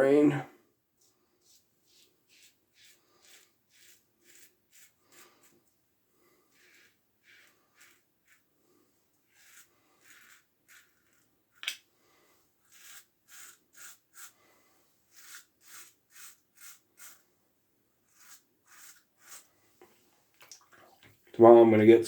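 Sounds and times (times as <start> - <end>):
razor scraping stubble: 1.4 - 5.6, 6.5 - 8.4, 9.3 - 11.3, 12.6 - 14.4, 15.1 - 17.2, 18.1 - 19.5.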